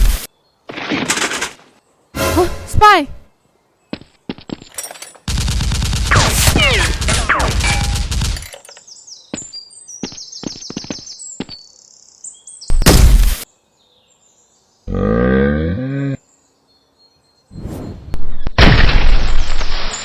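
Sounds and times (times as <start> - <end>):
single gunshots: 12.7 - 13.4, 18.6 - 20.0.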